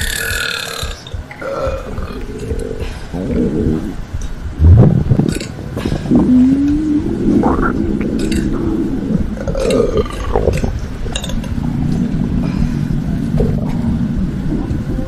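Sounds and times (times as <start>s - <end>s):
person burping: 0.0s - 4.0s, 5.2s - 8.7s, 9.4s - 10.7s
low rumble: 0.0s - 15.0s.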